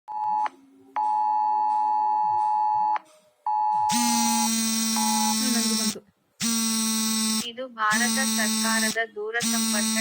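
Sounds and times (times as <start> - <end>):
two-pitch alert beeps: 1.0 - 10.0
harsh low buzzing tone: 3.9 - 10.0.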